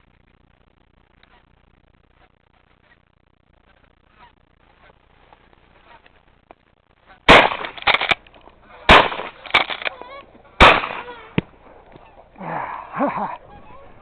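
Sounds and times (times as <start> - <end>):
geese honking faintly: 1.0 - 6.2, 6.9 - 7.7, 8.3 - 14.0
sharp gunshot reports: 7.3 - 8.1, 8.9 - 9.4, 10.6 - 11.1
loud shotgun shots with echo: 7.3 - 8.2, 8.9 - 9.8, 10.6 - 11.1.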